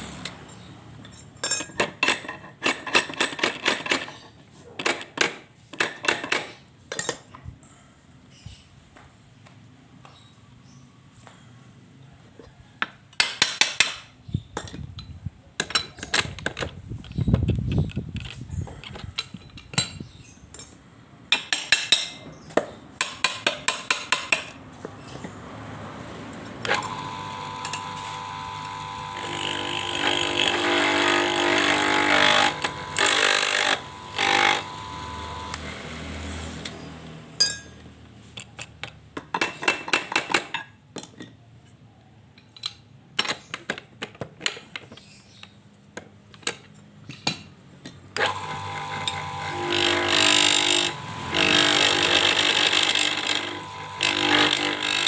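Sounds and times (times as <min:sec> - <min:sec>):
small power tool running: 0:26.6 - 0:36.3, 0:48.2 - 0:55.0.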